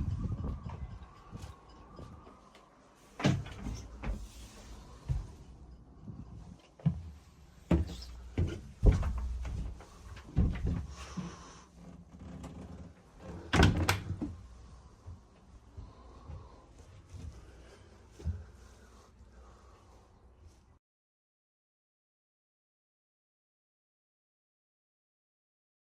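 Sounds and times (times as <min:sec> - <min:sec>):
irregular knocks and thumps: 0:07.7 - 0:11.4.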